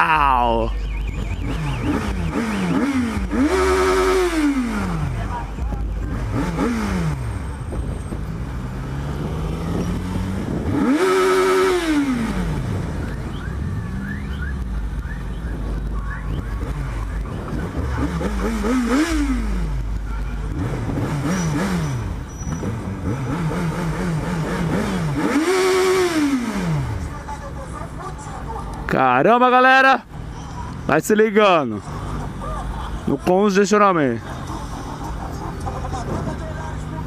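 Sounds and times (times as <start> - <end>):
motorcycle engine revving: 1.0 - 27.3.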